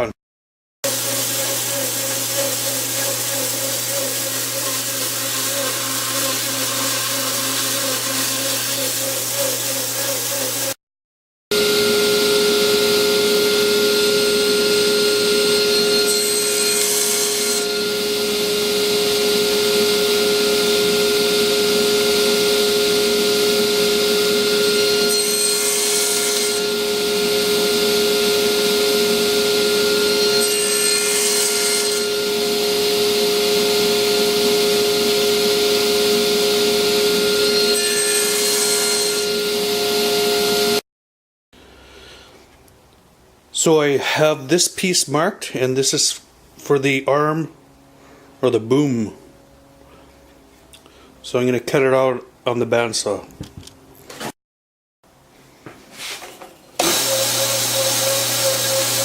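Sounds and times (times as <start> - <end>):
bandsaw humming: 0.8 - 10.8, 11.5 - 40.8, 56.8 - 59.0
saw blade cutting wood: 0.8 - 10.8, 13.2 - 40.7, 56.0 - 59.0.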